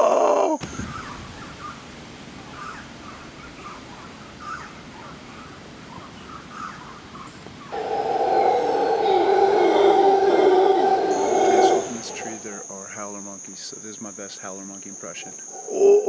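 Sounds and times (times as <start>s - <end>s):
rainforest background hiss: 0.0s - 16.0s
short bird calls: 5.9s - 12.4s
loud low howl: 7.7s - 12.4s.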